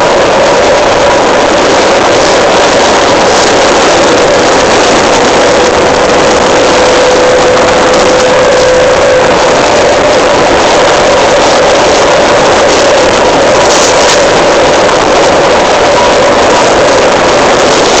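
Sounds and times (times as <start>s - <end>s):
electric train roar: 0.0s - 18.0s
train motor whine: 0.0s - 18.0s.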